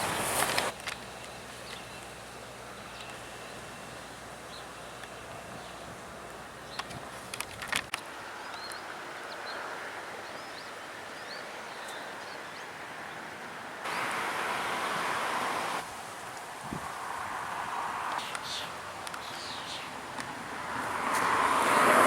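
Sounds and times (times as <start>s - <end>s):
steady outdoor hiss: 0.0s - 22.0s
bird chirping: 1.2s - 6.0s, 18.2s - 20.0s
sharp clicks: 18.1s - 20.3s.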